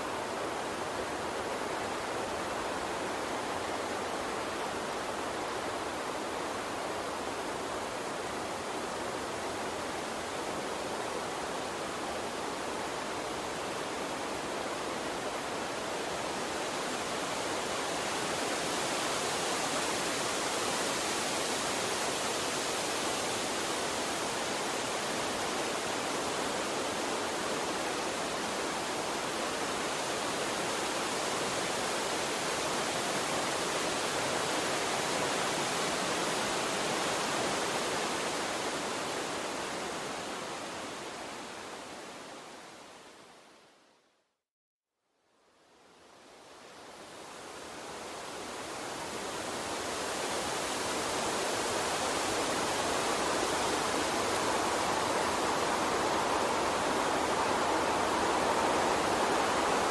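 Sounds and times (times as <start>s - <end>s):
water stream rushing: 0.0s - 43.2s, 46.5s - 59.9s
high hiss: 46.3s - 59.9s.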